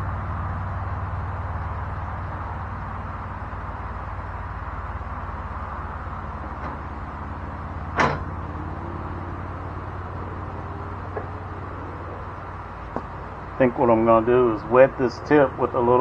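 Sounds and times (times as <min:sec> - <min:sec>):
low background hum: 0:00.0 - 0:16.0
sharp clack: 0:07.9 - 0:08.3.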